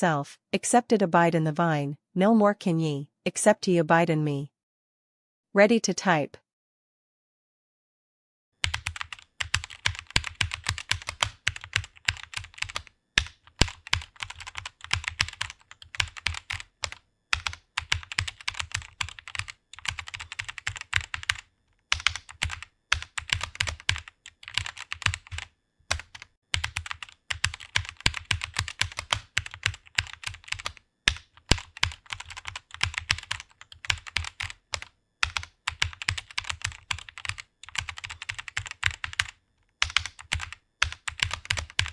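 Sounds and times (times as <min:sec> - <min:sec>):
typing on computer keyboard: 0:08.6 - 0:41.9.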